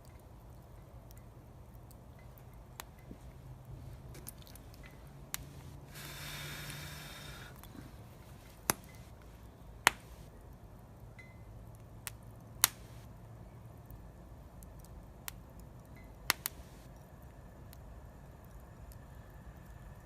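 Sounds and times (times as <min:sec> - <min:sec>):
wood fire crackling: 0:00.0 - 0:20.0
short hiss: 0:05.4 - 0:07.9.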